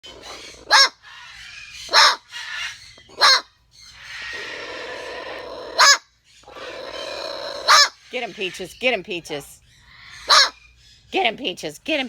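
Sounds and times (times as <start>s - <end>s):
cockatoo barking: 0.1s - 1.0s, 1.8s - 3.5s, 4.2s - 8.0s, 10.2s - 10.6s.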